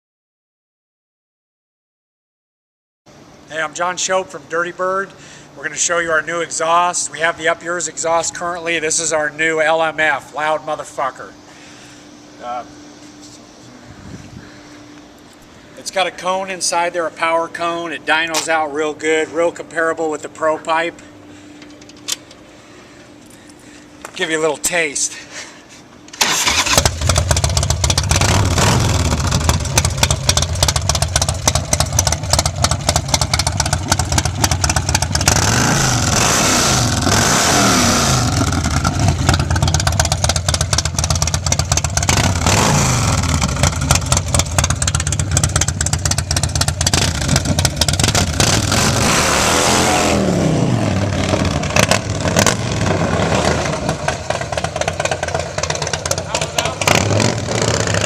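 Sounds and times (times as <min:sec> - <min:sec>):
motorcycle engine revving: 0:26.2 - 0:58.0.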